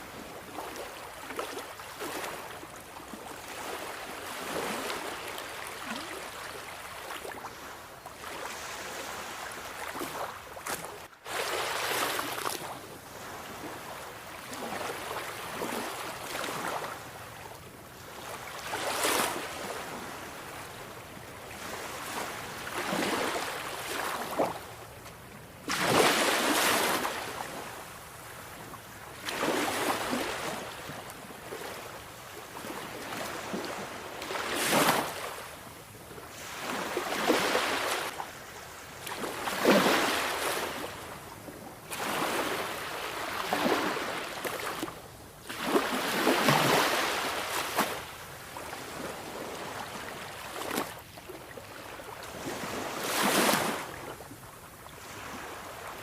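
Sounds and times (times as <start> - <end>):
sea waves breaking: 21.5 - 24.8, 25.6 - 28.5, 29.2 - 31.9, 36.3 - 41.1, 41.9 - 51.0, 51.7 - 54.1.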